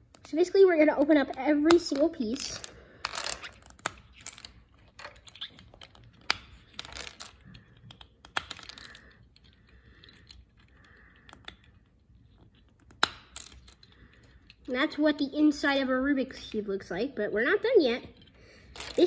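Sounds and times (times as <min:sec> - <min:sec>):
plastic cube pieces clicking: 0:01.0 - 0:14.7, 0:18.1 - 0:19.0.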